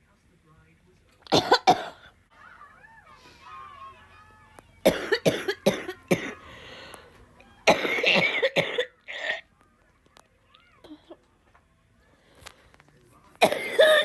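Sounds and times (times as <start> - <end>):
person coughing: 1.3 - 2.1, 4.9 - 6.4, 7.7 - 9.4, 13.4 - 14.0.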